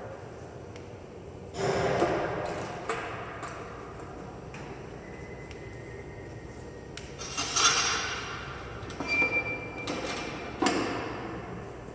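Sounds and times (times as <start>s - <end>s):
metal parts clinking and scraping: 7.2s - 8.3s.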